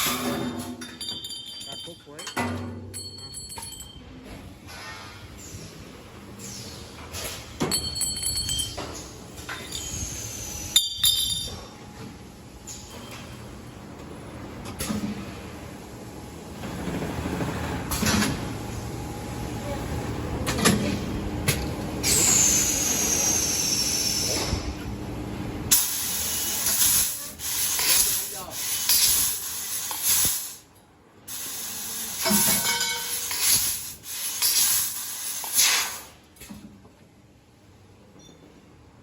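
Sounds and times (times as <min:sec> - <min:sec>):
gas hissing in bursts: 0:22.0 - 0:24.5, 0:25.7 - 0:30.6, 0:31.3 - 0:36.2.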